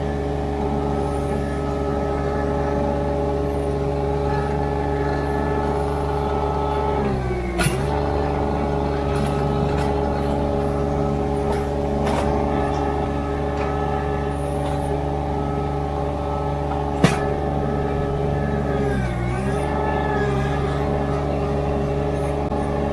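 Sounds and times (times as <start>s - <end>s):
skid steer engine running: 0.0s - 22.9s.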